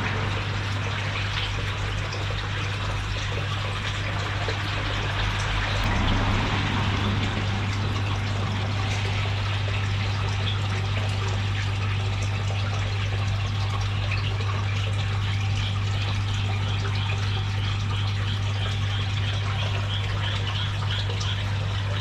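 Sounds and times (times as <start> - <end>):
low hum: 0.0 - 12.5
water trickling and splashing: 0.0 - 22.0.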